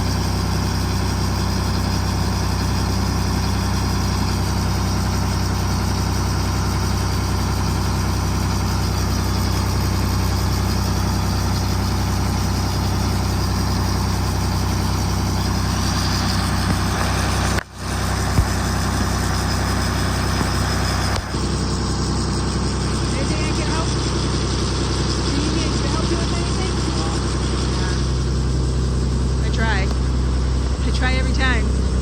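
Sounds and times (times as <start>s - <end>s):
diesel engine idling: 0.0s - 32.0s.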